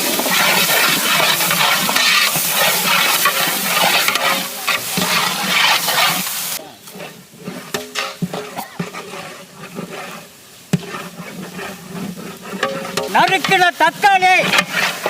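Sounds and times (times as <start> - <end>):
paste sizzling in hot oil: 0.0 - 15.0
spoon scraping a pot: 0.0 - 15.0.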